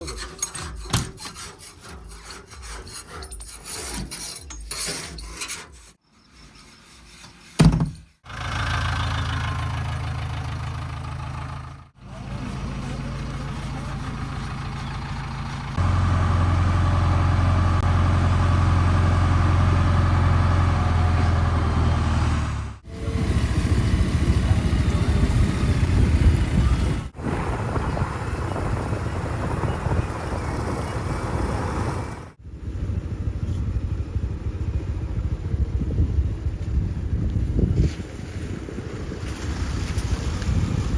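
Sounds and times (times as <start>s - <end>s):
scraping rasping clatter: 0.0s - 8.2s
diesel engines running: 8.2s - 37.5s.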